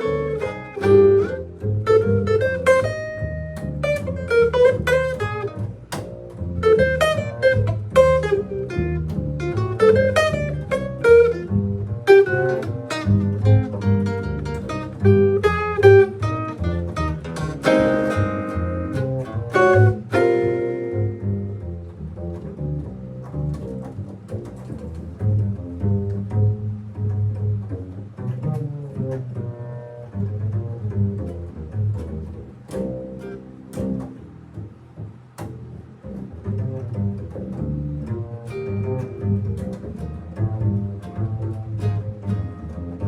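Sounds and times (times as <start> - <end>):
electric guitar playing: 0.0 - 22.5, 35.4 - 43.0
bass guitar playing: 0.0 - 43.0.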